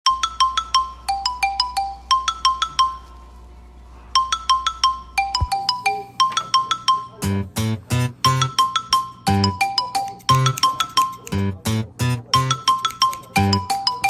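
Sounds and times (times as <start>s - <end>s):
chiming mallet melody: 0.1s - 3.1s.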